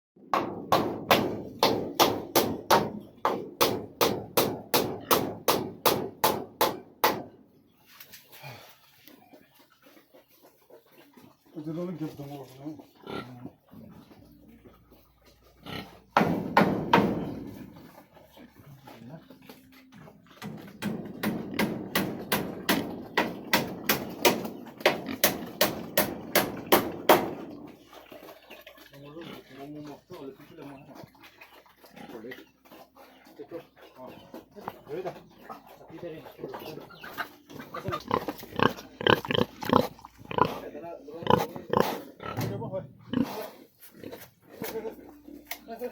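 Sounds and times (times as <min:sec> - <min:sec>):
sharp ringing knocks: 0:16.2 - 0:17.5
rhythmic hard knocking: 0:20.4 - 0:27.4.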